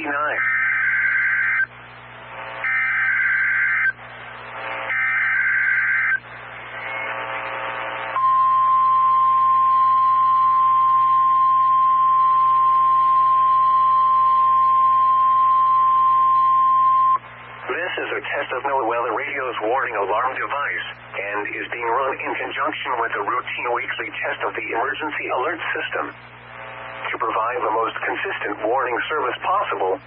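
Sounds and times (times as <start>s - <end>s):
steady warning alarm tone: 0.0s - 1.8s, 2.4s - 6.3s, 8.2s - 17.2s
radio hiss: 0.0s - 15.8s, 16.9s - 30.0s
buzzy digital header bursts: 2.3s - 7.4s.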